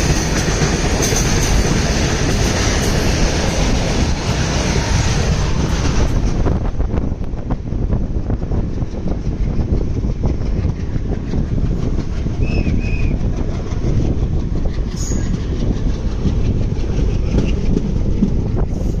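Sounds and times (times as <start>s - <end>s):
freight train wheels clattering: 0.0s - 19.0s.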